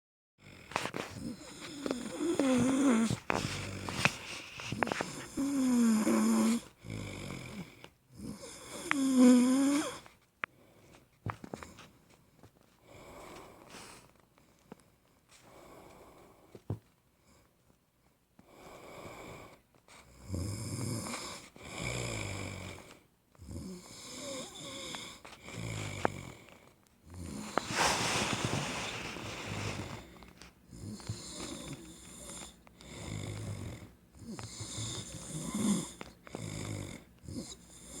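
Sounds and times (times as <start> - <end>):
man snoring: 0.4 - 4.1, 5.0 - 10.0, 20.2 - 22.8, 30.8 - 38.0.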